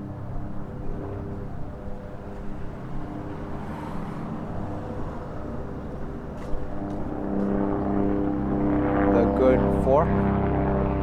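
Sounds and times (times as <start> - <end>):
traffic engine rumble: 0.0 - 10.1.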